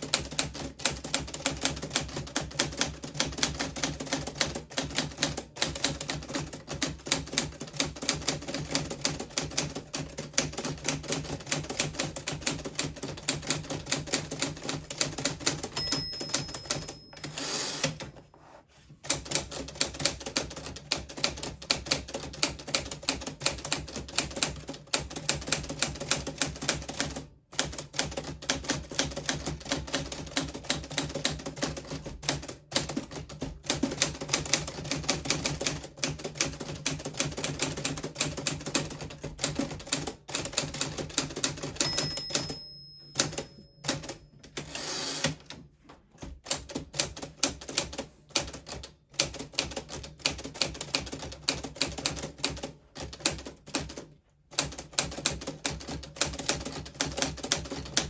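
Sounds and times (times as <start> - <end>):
typewriter bell ring: 15.3 - 18.1, 41.5 - 45.4
typewriter carriage return rasping: 15.4 - 18.1, 44.5 - 45.5.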